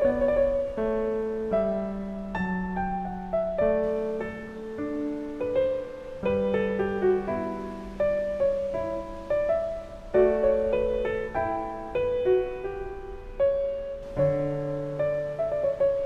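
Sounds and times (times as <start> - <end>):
gentle piano music: 0.0 - 16.0.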